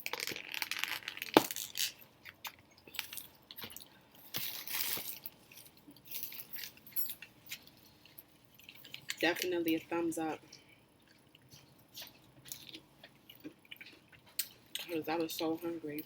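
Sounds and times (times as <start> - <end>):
wet chewing and mouth clicks: 7.5 - 9.5, 10.6 - 15.0.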